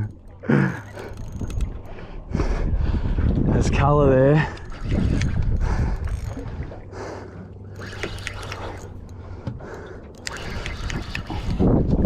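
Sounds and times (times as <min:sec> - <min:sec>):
water sloshing around boat: 0:00.0 - 0:12.0
wind noise: 0:01.1 - 0:06.8, 0:10.3 - 0:12.0.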